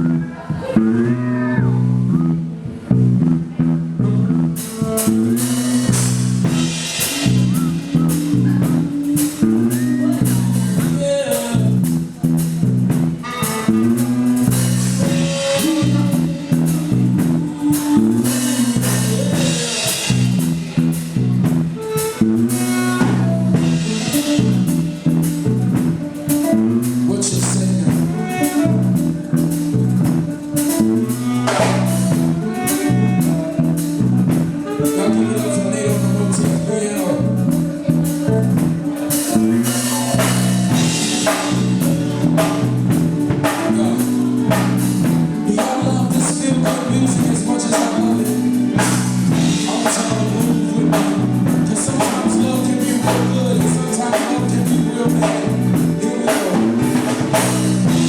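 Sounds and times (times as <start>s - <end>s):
live band playing soul groove: 2.5s - 58.0s.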